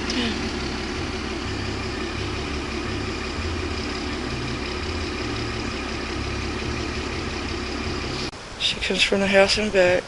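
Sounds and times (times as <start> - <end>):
vehicle engine idling: 0.0 - 8.5
constant hiss: 8.3 - 10.0.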